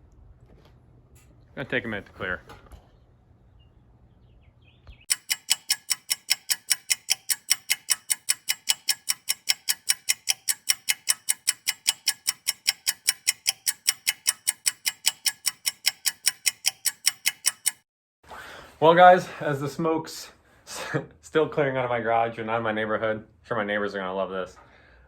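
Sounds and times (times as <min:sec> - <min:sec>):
clock ticking: 0:05.0 - 0:17.9.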